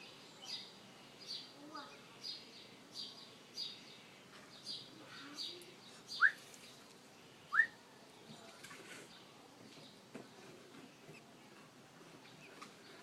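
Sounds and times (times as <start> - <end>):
birds chirping: 0.0 - 13.0
rising whistled bird calls: 6.1 - 6.4, 7.5 - 7.8.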